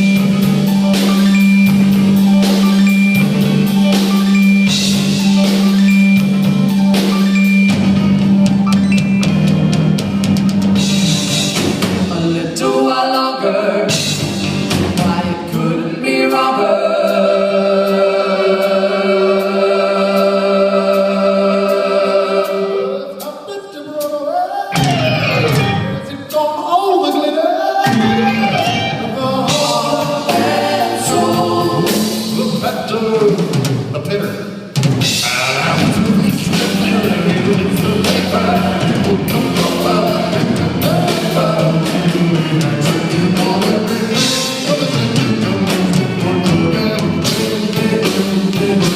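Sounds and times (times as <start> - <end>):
drums beating: 0.0 - 13.0, 13.9 - 22.6, 24.8 - 26.6, 27.8 - 48.9
live rock band: 0.0 - 48.9
person singing: 12.0 - 14.2, 14.9 - 33.6, 35.1 - 48.9.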